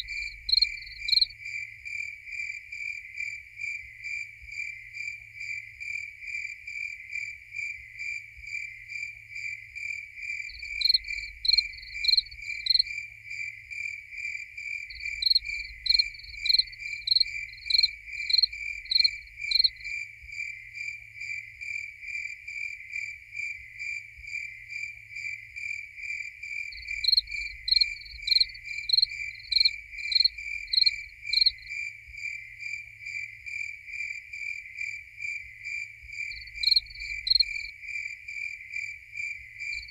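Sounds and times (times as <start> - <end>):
high-pitched cricket quick chirps: 0.0 - 1.3, 10.4 - 13.0, 14.9 - 20.0, 26.6 - 32.6, 33.2 - 37.7
cricket chirping steadily: 0.0 - 39.9.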